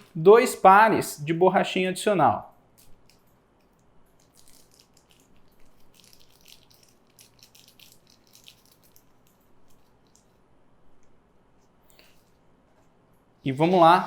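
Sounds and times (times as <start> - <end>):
small irregular ticks: 2.8 - 10.4
packaging rustling: 4.2 - 10.4.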